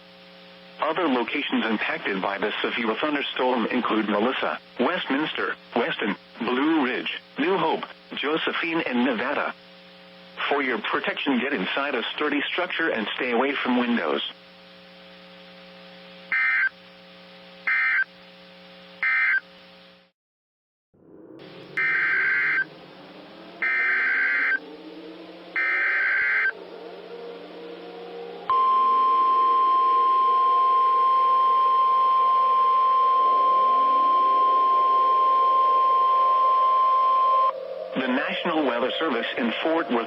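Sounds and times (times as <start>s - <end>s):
screeching data bursts: 16.3s - 16.8s, 17.6s - 18.1s, 19.0s - 19.5s, 21.4s - 40.0s
faint rising tones: 21.0s - 40.0s
steady alert tone: 21.8s - 22.7s.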